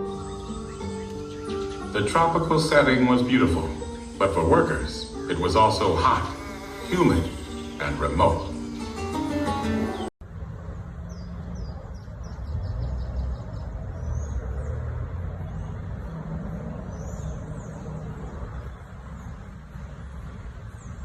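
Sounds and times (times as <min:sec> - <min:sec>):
small birds chirping: 0:00.0 - 0:10.1, 0:11.0 - 0:21.0
low rumble of distant traffic: 0:10.2 - 0:21.0.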